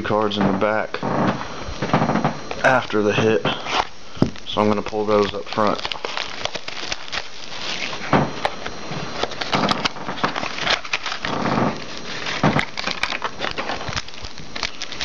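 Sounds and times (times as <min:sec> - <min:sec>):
cards shuffled and rustling: 0:03.7 - 0:15.0.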